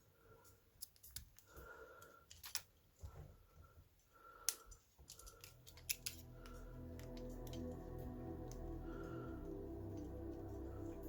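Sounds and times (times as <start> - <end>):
handcuff metal clicks and taps: 4.5 - 6.3
background music: 5.4 - 11.0.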